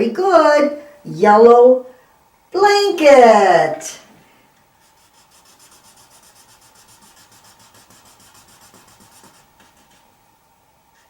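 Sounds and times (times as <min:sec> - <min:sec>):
pencil scribbling on paper: 0:04.8 - 0:10.2.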